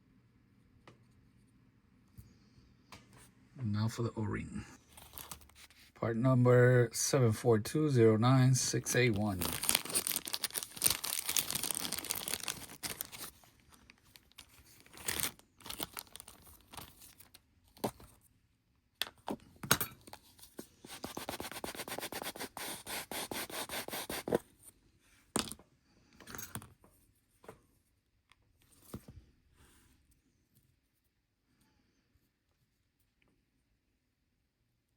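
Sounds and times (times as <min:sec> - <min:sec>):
plastic packet crinkling: 0:04.9 - 0:05.6, 0:08.9 - 0:17.4.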